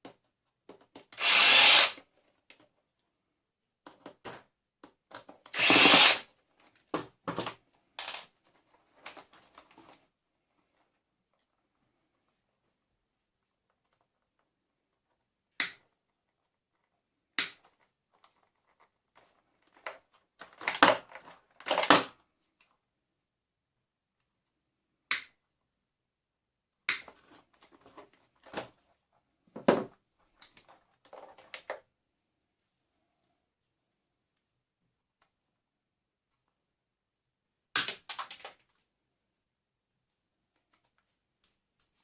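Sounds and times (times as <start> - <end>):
plastic parts cracking: 17.4 - 22.7, 37.8 - 38.7.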